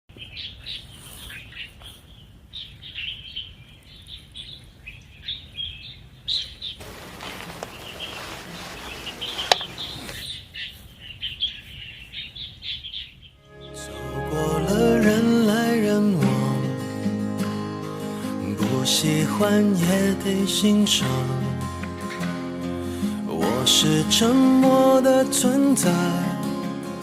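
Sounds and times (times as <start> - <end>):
small birds chirping: 0.1 - 13.8.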